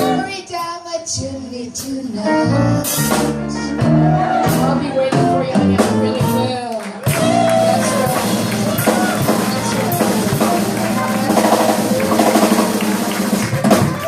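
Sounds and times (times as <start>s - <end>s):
live jazz band playing: 0.0s - 0.8s, 1.7s - 14.0s
drum kit: 0.0s - 14.0s.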